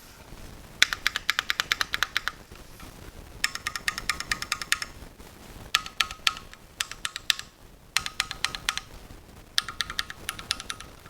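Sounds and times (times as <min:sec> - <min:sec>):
mechanical keyboard typing: 0:00.8 - 0:02.4, 0:03.4 - 0:05.0, 0:05.7 - 0:09.0, 0:09.6 - 0:11.0.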